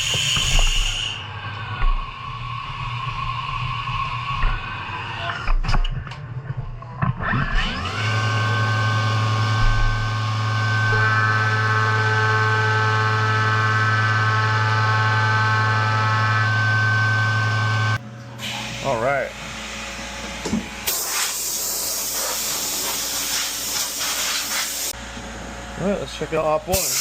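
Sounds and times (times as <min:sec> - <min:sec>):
milling machine spindle whine: 0:07.5 - 0:18.0.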